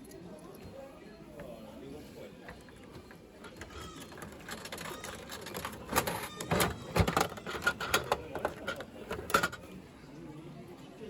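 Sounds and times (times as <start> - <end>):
plastic capsule toy clicking: 2.6 - 9.6.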